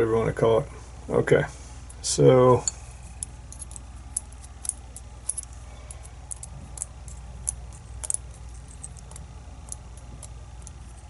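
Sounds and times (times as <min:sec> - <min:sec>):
metallic clicks and taps: 0:02.6 - 0:10.8.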